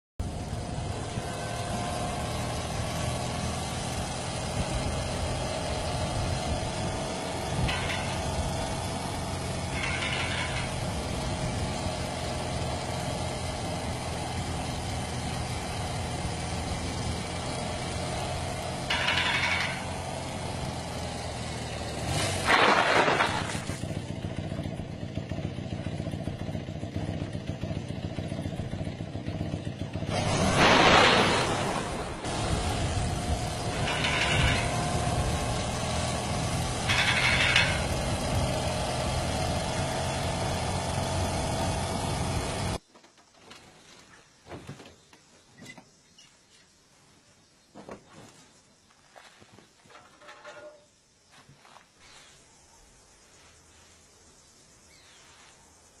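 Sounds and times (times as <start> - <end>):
motorcycle engine running: 0.2 - 42.8
short noisy bursts: 30.1 - 39.0.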